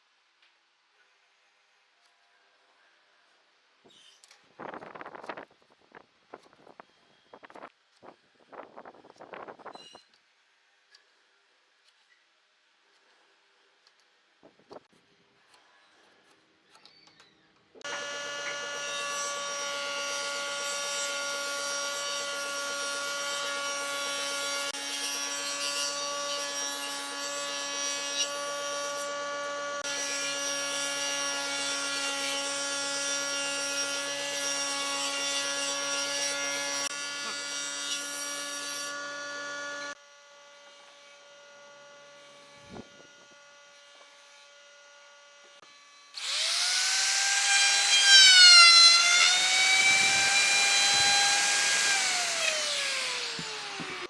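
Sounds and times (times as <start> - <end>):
power tool cutting wood: 17.8 - 54.0.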